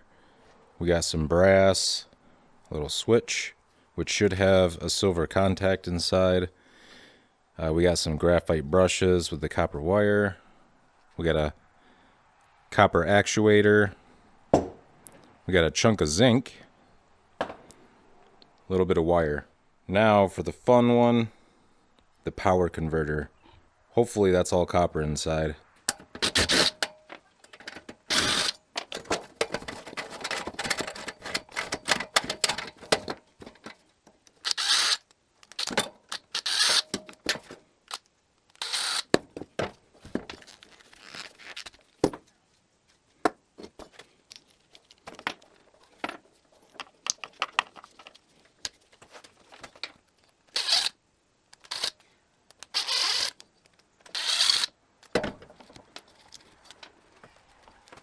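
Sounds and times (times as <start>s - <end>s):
metal parts clattering: 25.9s - 33.7s, 34.4s - 37.5s, 51.6s - 51.9s, 54.1s - 54.7s
scraping: 25.9s - 33.8s.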